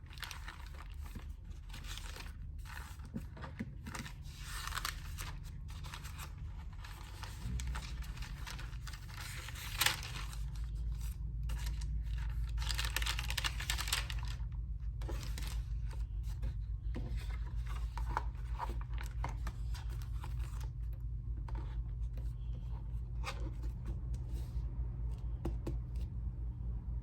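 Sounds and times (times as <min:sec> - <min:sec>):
thin paper pages rustling: 0:00.0 - 0:24.6
steady low hum: 0:00.0 - 0:27.0.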